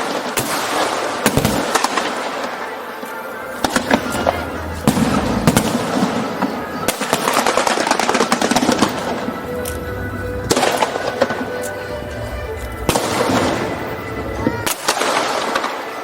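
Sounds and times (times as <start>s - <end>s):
fireworks booming: 0.0s - 2.8s, 3.4s - 16.0s
fireworks crackling pops: 0.0s - 16.0s
music playing: 0.0s - 16.0s.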